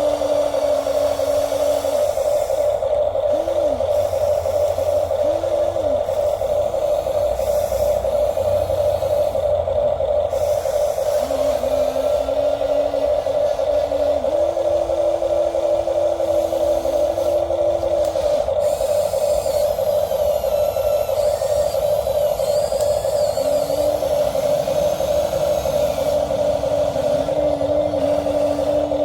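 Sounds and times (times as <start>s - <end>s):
small electric motors whining: 0.0s - 29.0s.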